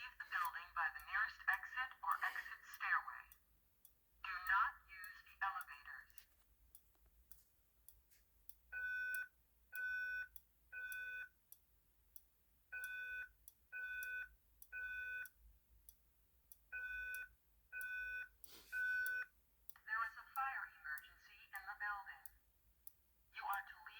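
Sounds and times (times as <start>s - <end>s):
fire alarm beeps: 8.8s - 11.4s, 12.7s - 15.4s, 16.7s - 19.3s.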